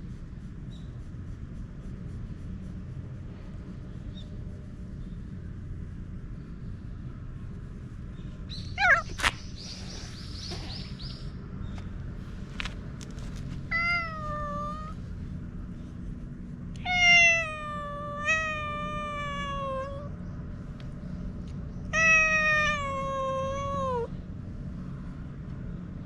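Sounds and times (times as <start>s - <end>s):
cat meowing: 8.8s - 9.3s, 13.7s - 15.0s, 16.8s - 20.1s, 21.9s - 24.1s.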